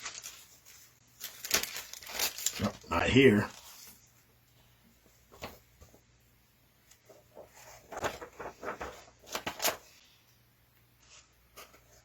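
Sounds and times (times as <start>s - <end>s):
paper and packaging rustling: 0.0s - 4.2s, 6.9s - 10.0s.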